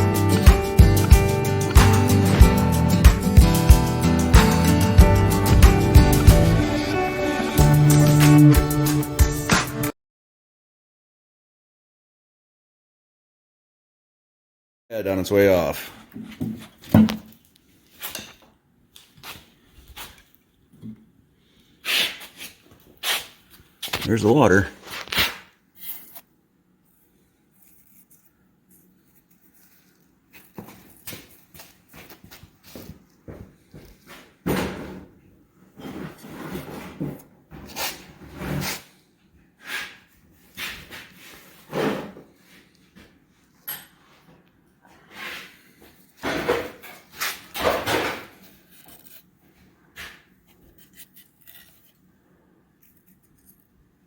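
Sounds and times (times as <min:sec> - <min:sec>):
rasping noise: 0:00.9 - 0:07.0
metal knocks and scrapes: 0:01.7 - 0:07.0, 0:16.4 - 0:17.3.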